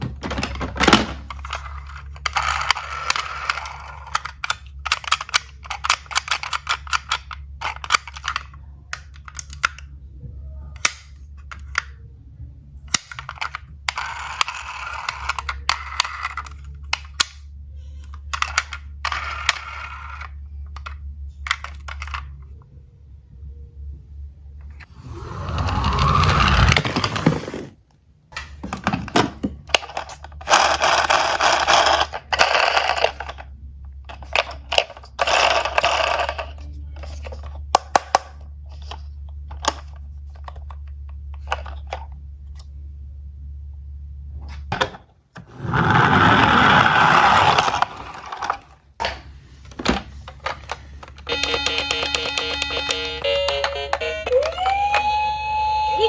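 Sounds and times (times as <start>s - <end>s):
toy cars rolling on plastic: 0.0s - 9.9s, 12.9s - 22.5s, 24.8s - 27.8s, 28.4s - 42.7s, 45.4s - 54.0s
toy cars clicking when handled: 1.2s - 9.9s, 10.7s - 12.0s, 12.8s - 22.5s, 29.7s - 42.7s
toy siren beeping: 51.3s - 56.0s.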